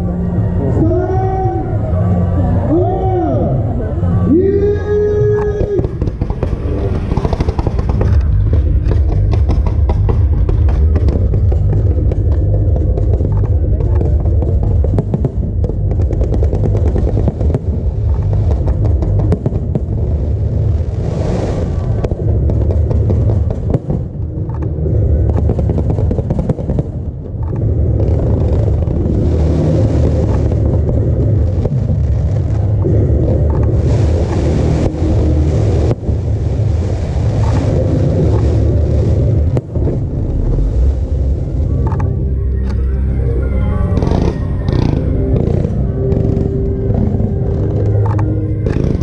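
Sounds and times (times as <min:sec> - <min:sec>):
crackling fireworks: 0:04.7 - 0:42.9, 0:43.8 - 0:49.0
hissing crackling sparks: 0:05.6 - 0:41.2.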